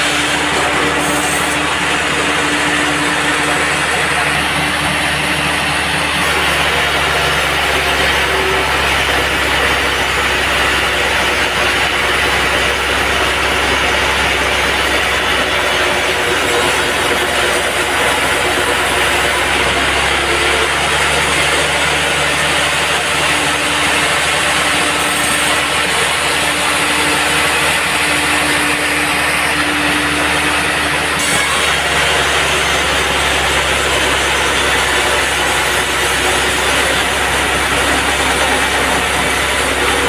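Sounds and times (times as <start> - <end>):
band sawmill running: 0.0 - 40.0.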